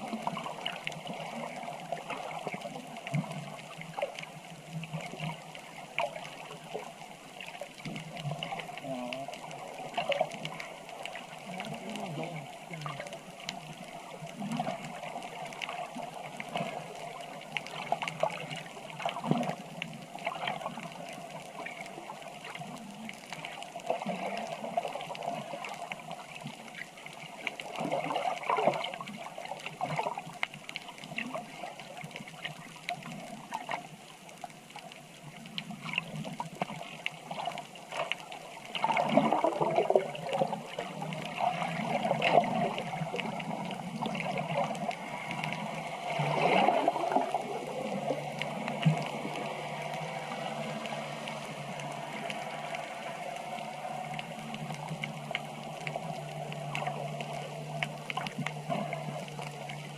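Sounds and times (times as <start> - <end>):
water sloshing and gurgling: 0.0 - 59.9.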